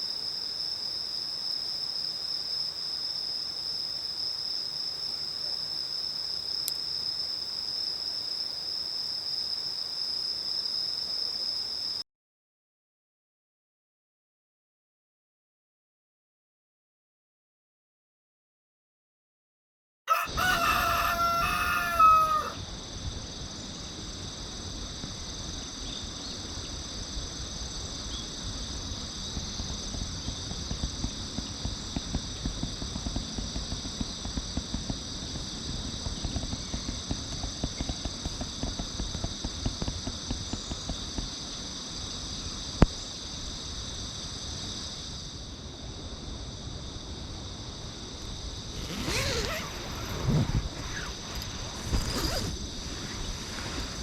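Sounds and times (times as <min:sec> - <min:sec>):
high-pitched background hiss: 0:00.0 - 0:12.0, 0:20.2 - 0:36.5, 0:37.2 - 0:54.0
rooster crowing: 0:20.1 - 0:22.6
faint crackling: 0:48.7 - 0:54.0.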